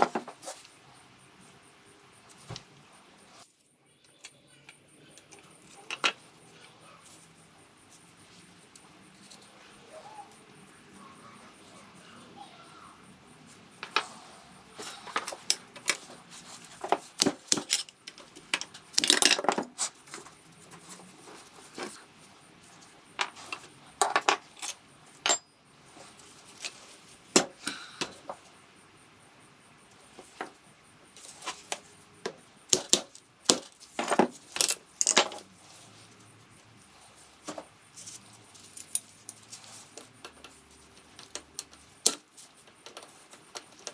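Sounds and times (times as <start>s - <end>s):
metallic clinks of hand tools: 24.6s - 25.6s.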